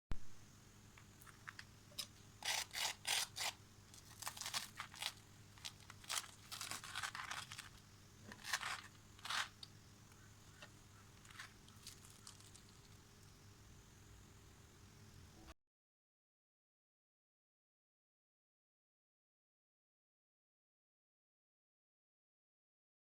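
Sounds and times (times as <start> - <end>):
food tearing and crinkling: 1.2 - 9.7, 10.6 - 13.0.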